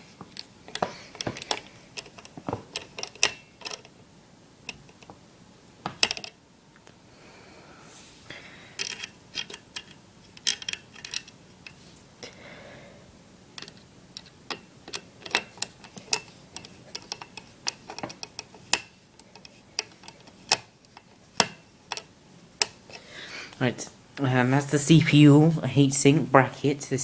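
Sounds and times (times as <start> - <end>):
screwdriver clicking on metal screws: 0.7 - 3.9, 13.6 - 22.8.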